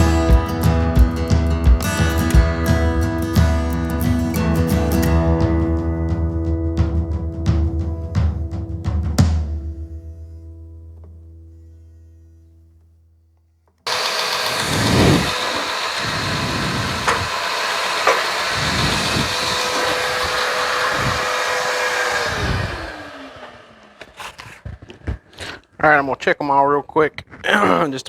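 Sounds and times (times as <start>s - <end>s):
belt grinder running: 13.9s - 24.7s.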